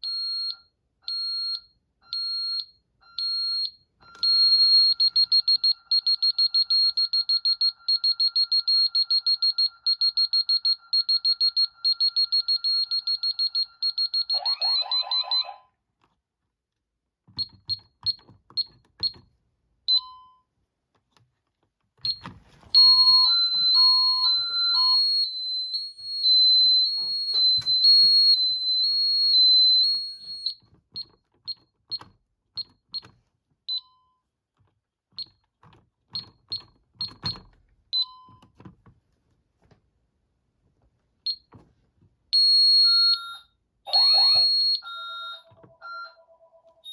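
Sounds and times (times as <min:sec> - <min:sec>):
fast-pulsing alarm beeps: 0:04.2 - 0:15.6, 0:42.4 - 0:46.2
two-tone alarm warble: 0:04.2 - 0:15.7, 0:22.8 - 0:30.4, 0:42.4 - 0:46.9.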